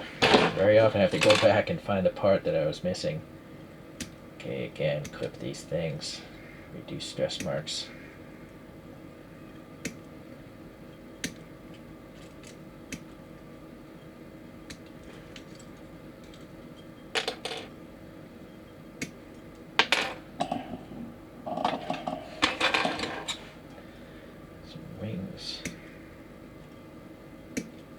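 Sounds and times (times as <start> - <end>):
plastic parts clicking and clattering: 21.7 - 23.4.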